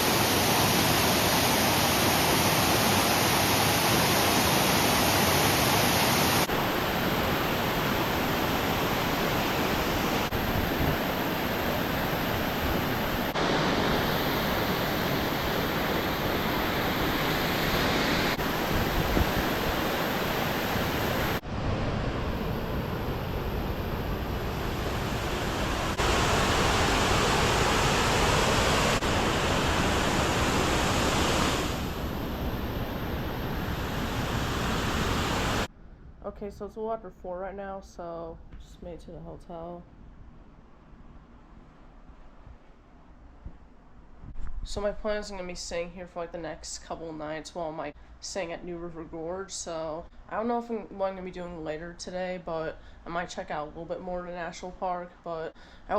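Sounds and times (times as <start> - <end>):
waterfall rushing: 0.0 - 35.7.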